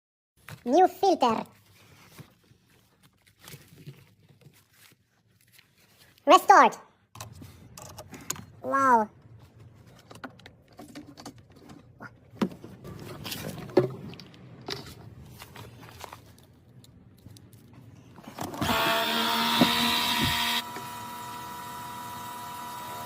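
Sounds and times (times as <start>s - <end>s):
electric motor whining: 18.5s - 23.0s.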